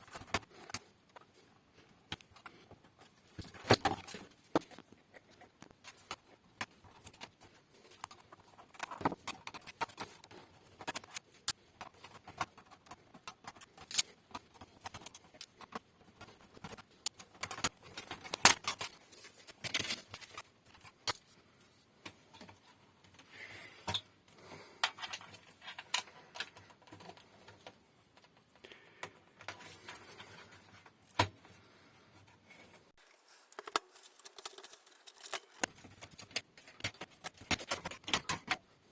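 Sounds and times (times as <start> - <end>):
tools and small parts clicking: 7.9 - 21.3, 33.4 - 38.7.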